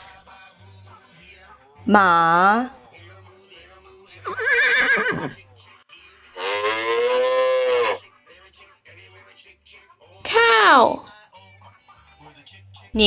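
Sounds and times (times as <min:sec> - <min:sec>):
horse whinnying: 0:04.3 - 0:05.4, 0:06.4 - 0:08.0.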